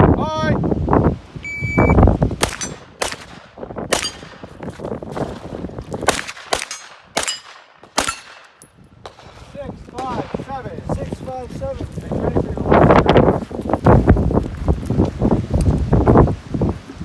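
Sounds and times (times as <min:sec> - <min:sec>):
shot timer beep: 0:01.4 - 0:02.0
gunshots: 0:02.4 - 0:04.5, 0:06.0 - 0:09.4.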